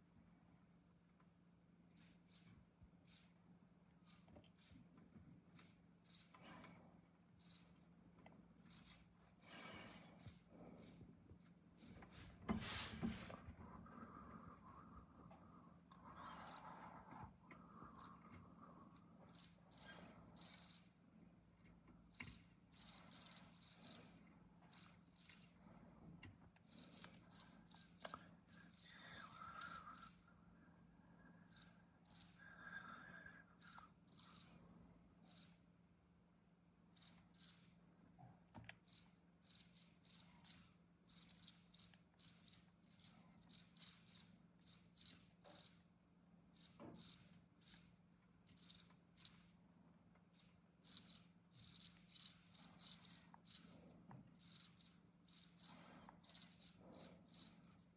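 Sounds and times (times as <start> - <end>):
faint low hum: 0.0 - 57.9.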